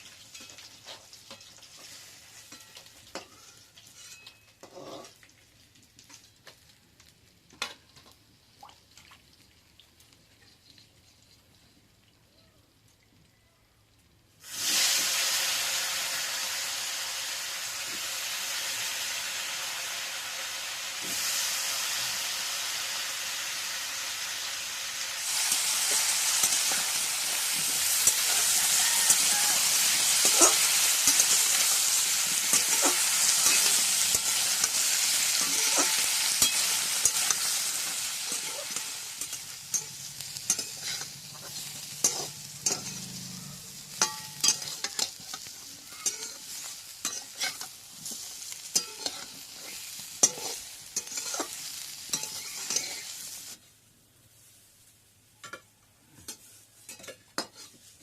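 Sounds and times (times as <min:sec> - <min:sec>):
food sizzling in hot oil: 0:00.0 - 0:06.7, 0:14.4 - 0:53.6, 0:56.3 - 0:58.0
spatula scraping in pan: 0:03.4 - 0:05.2, 0:25.2 - 0:53.6, 0:56.2 - 0:58.0.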